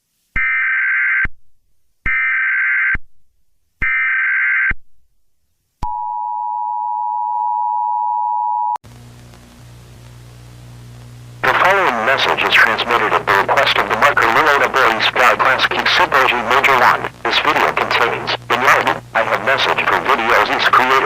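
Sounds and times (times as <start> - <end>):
low buzzing hum: 8.9 - 21.0.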